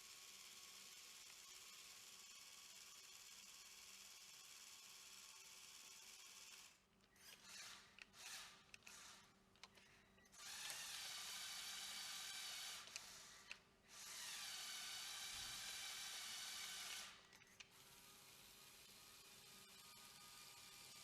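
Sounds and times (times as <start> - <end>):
small electric motors whining: 6.2 - 21.0.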